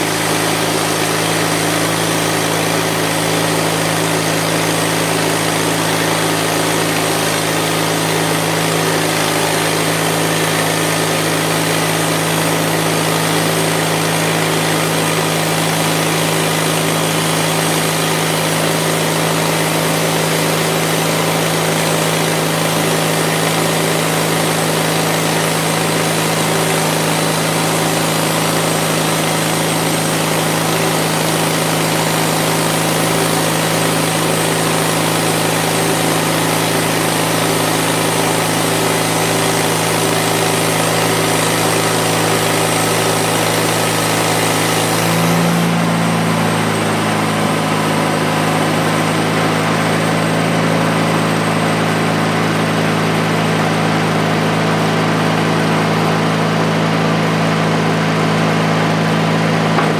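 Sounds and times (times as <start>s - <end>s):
band blade cutting log: 0.0s - 47.9s, 59.6s - 59.9s
bandsaw mill engine running: 0.0s - 59.9s.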